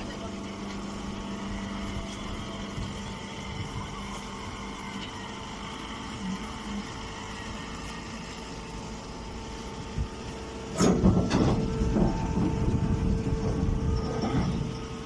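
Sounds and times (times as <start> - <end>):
baler mechanical hum: 0.0 - 15.0
dense mechanical clatter: 10.6 - 15.0.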